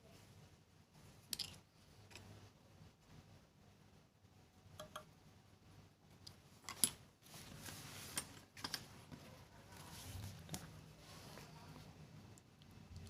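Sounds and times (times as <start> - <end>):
light metallic clicks and taps: 4.8 - 5.1
soft rustle of handling: 6.1 - 13.0.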